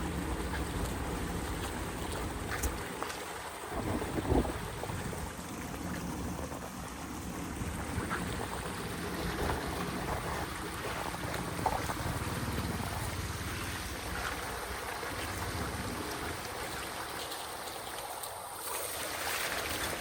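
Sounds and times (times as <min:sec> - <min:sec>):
running water rushing: 0:00.0 - 0:20.0
wind buffeting microphone: 0:03.7 - 0:13.3.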